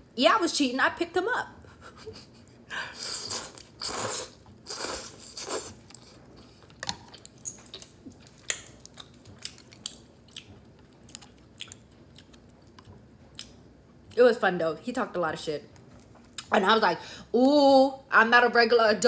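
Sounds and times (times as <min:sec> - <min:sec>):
person slurping noodles: 0:02.9 - 0:06.2
chewing with wet mouth clicks: 0:04.7 - 0:13.6.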